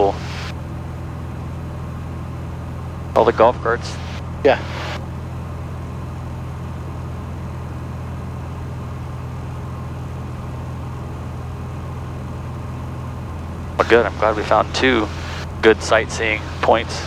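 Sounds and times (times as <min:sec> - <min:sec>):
plane engine droning in cabin: 0:00.0 - 0:17.0.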